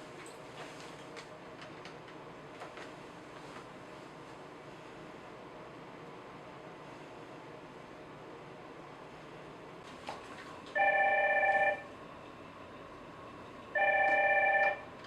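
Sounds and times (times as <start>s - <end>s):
electronic telephone ring: 10.8s - 11.9s, 13.7s - 14.9s.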